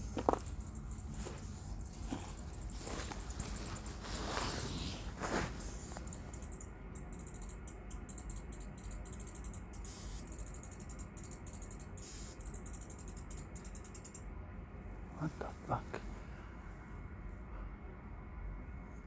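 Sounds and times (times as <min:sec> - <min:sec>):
rustling: 0:00.0 - 0:06.4
sharp clicks with high squeak: 0:05.6 - 0:14.2.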